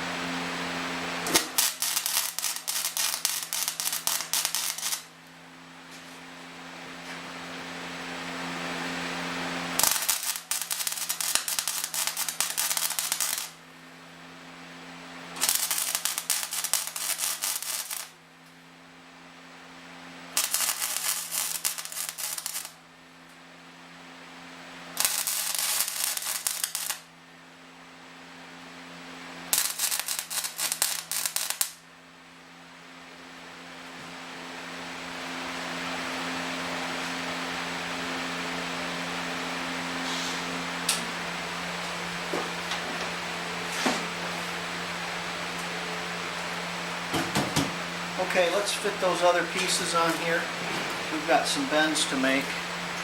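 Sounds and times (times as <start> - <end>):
welding machine hum: 0.0 - 53.0
welding arc crackling: 0.8 - 5.2, 9.2 - 13.8, 15.1 - 18.2, 20.2 - 22.9, 24.8 - 27.1, 29.3 - 31.8, 40.8 - 53.0.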